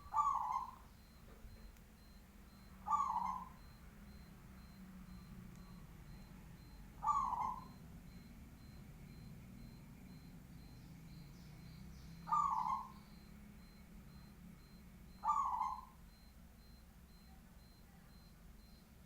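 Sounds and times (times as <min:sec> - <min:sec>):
dove cooing: 0:00.0 - 0:05.2, 0:05.8 - 0:08.2, 0:10.1 - 0:13.3, 0:15.1 - 0:16.2.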